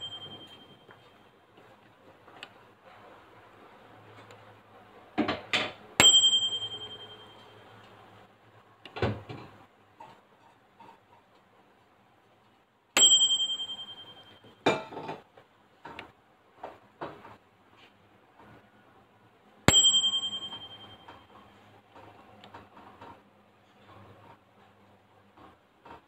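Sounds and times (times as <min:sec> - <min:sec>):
microwave timer ding: 0:00.0 - 0:01.1, 0:06.0 - 0:07.8, 0:13.0 - 0:14.6, 0:19.7 - 0:21.4.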